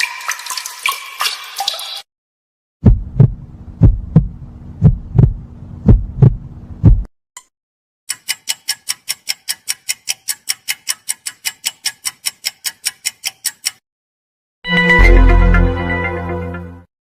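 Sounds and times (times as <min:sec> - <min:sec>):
clock-like ticking: 0:08.1 - 0:13.8.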